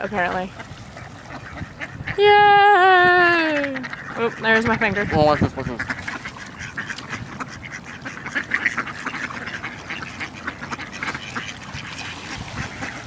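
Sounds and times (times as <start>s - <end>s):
ducks quacking: 0.0s - 2.4s, 3.0s - 13.0s.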